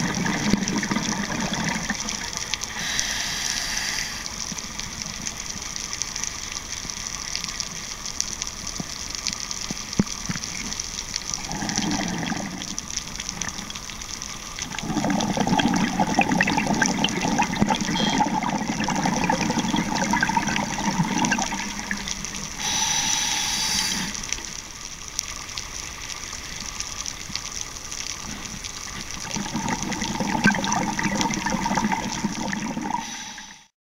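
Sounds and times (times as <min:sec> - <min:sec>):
steady underwater hiss: 0:00.0 - 0:33.7
scuba regulator exhaled bubbles: 0:11.4 - 0:12.8, 0:14.6 - 0:24.2, 0:29.2 - 0:33.7
brief higher hiss: 0:22.6 - 0:24.2.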